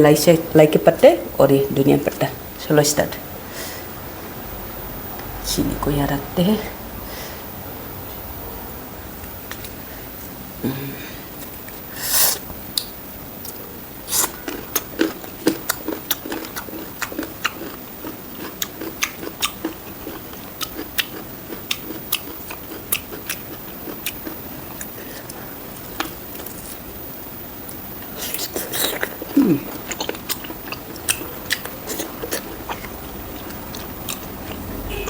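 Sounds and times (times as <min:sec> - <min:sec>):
soft chewing: 0:09.4 - 0:09.9, 0:12.7 - 0:27.0, 0:27.6 - 0:35.0.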